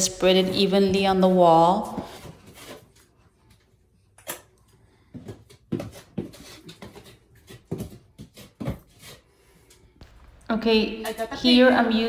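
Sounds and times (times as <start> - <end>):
putty knife scraping and clicking: 5.3 - 9.2.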